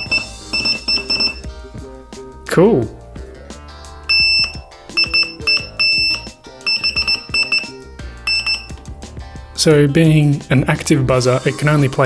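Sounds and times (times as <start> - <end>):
high-pitched buzzer beeps: 0.0 - 1.5, 4.1 - 8.8.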